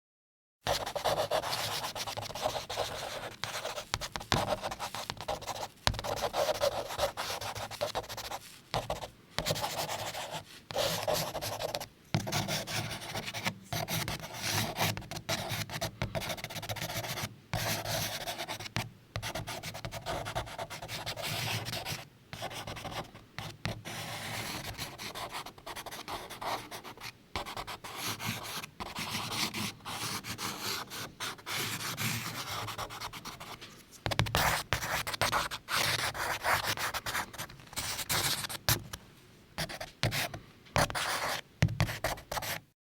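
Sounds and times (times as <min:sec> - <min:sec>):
charcoal scratching on paper: 0:00.7 - 0:17.0.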